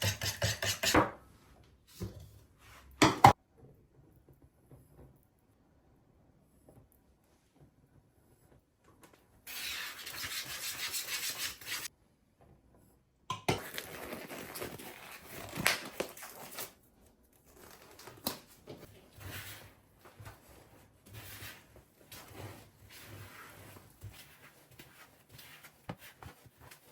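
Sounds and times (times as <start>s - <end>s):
rubbing or scrubbing: 9.5s - 11.9s, 20.4s - 26.9s.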